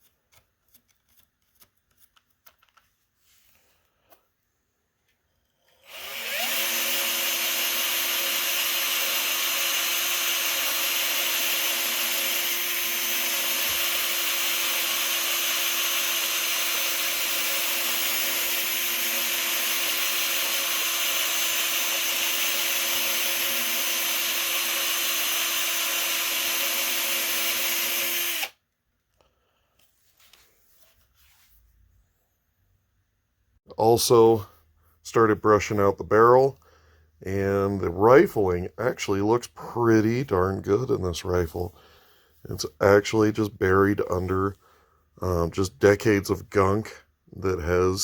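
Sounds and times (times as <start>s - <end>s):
power drill spinning brush: 5.5s - 28.6s.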